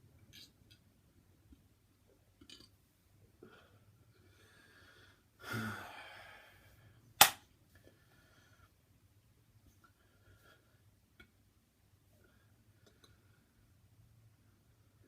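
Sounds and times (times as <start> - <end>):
sharp click: 7.2 - 7.4.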